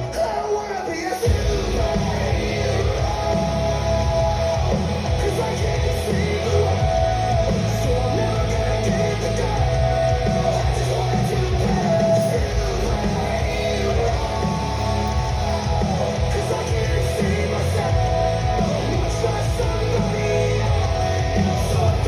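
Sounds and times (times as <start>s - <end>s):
rock music with singer and guitar: 0.0s - 22.0s.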